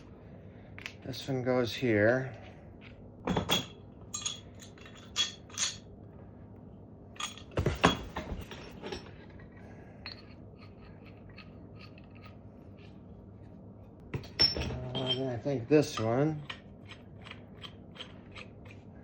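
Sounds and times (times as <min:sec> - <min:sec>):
metal pipe fittings clinking: 0:03.3 - 0:05.9, 0:07.2 - 0:09.1, 0:10.0 - 0:13.0, 0:14.2 - 0:18.8.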